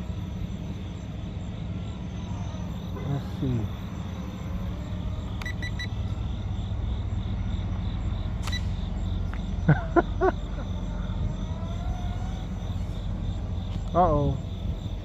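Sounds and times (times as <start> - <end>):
electric motor whine: 0.0 - 6.9
crickets chirping: 0.0 - 15.0
wind rumble on microphone: 10.5 - 15.0.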